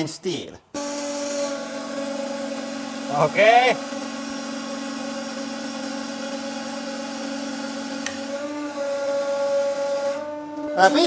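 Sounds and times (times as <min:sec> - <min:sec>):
hydraulic pump humming: 0:00.8 - 0:11.0
sharp click: 0:08.0 - 0:08.3.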